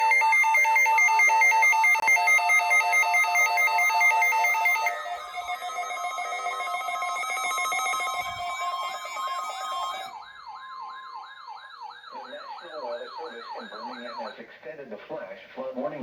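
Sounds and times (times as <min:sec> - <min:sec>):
electronic alert tones warbling: 0:00.0 - 0:10.2
siren-like sweeping tones: 0:00.0 - 0:14.5.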